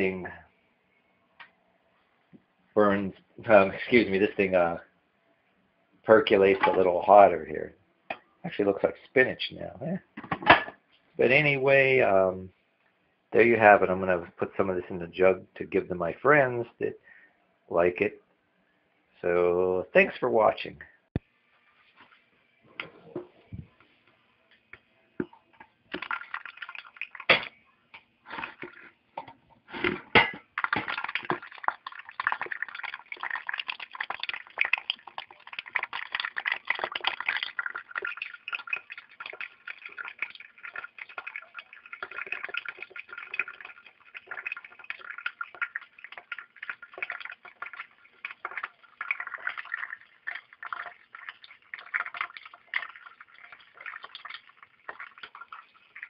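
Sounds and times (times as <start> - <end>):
liquid gurgling and splashing: 25.9 - 27.5, 29.9 - 56.0.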